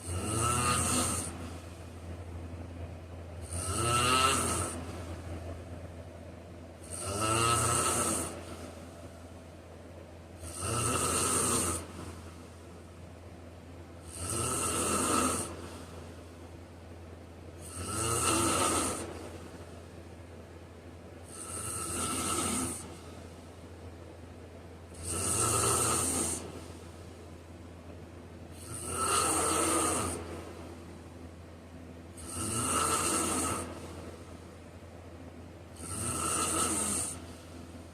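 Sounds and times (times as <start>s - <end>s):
person snoring: 0.0s - 1.4s, 3.4s - 4.8s, 6.8s - 8.7s, 10.4s - 12.2s, 14.0s - 15.8s, 17.6s - 19.2s, 21.3s - 23.0s, 25.0s - 26.5s, 28.6s - 30.3s, 32.2s - 33.9s, 35.8s - 37.3s
steady low hum: 0.0s - 37.9s.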